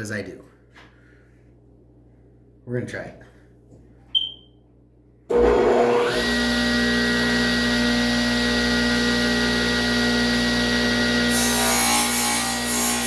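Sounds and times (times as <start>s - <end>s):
table saw motor whining: 5.3s - 13.0s.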